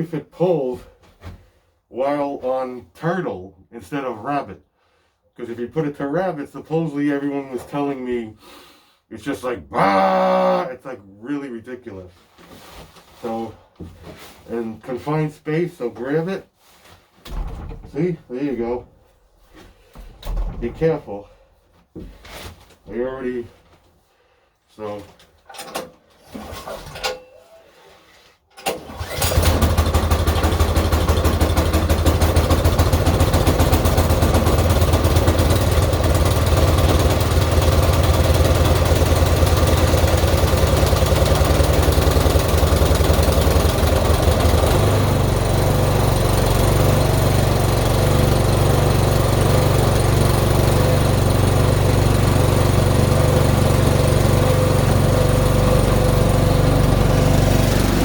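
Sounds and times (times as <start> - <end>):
small engine starting and running: 28.6 - 58.0.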